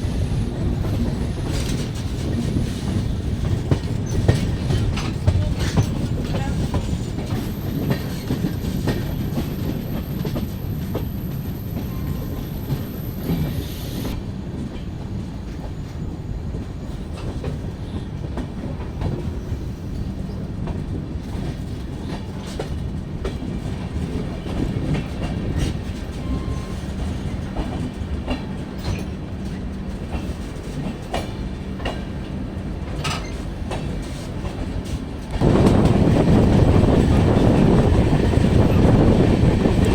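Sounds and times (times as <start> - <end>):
train wheels rumbling: 0.0 - 39.9
wheels clacking over rail joints: 0.8 - 14.2.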